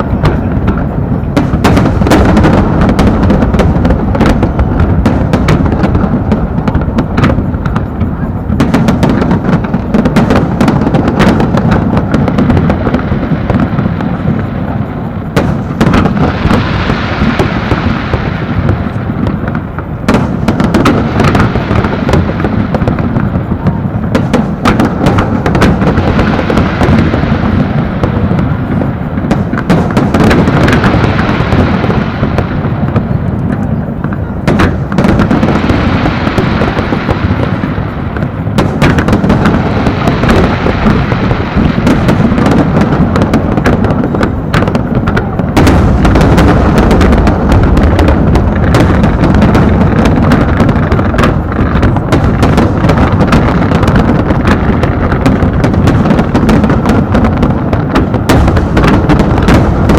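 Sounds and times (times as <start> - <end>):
crackling hiss: 0.0 - 59.9.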